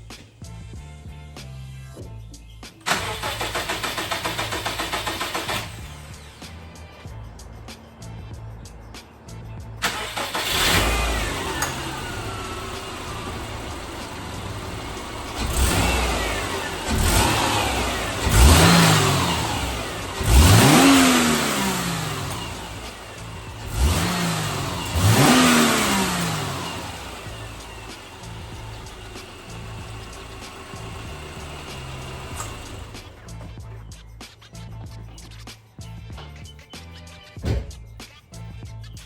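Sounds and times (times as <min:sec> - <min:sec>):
car engine starting and revving: 0:02.8 - 0:33.6.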